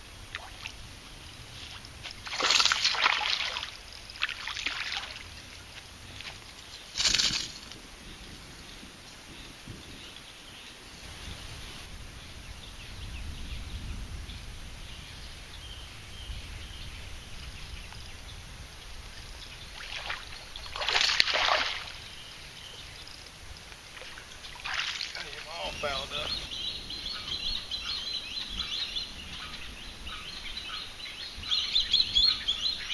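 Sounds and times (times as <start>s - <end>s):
wind rumbling on microphone: 0.0s - 32.9s.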